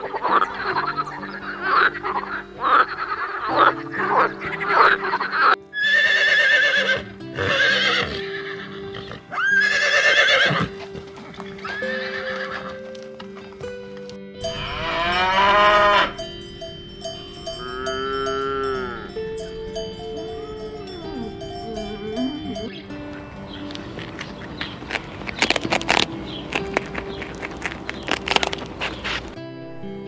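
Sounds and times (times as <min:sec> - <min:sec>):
animals bleating: 0:00.0 - 0:16.3
soft background music: 0:00.0 - 0:30.0.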